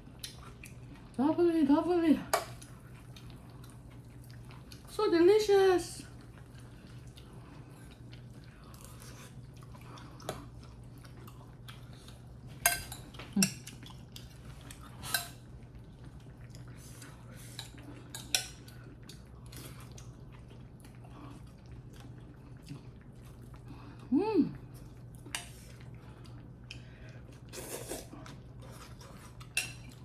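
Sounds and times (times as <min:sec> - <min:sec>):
cutlery clinking against dishes: 0:12.6 - 0:13.7, 0:29.5 - 0:30.0.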